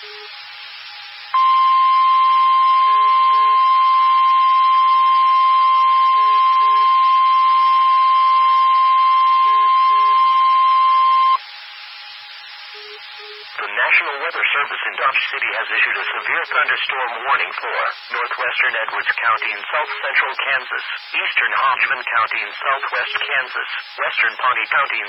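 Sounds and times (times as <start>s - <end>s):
radio hiss: 5.7s - 25.0s.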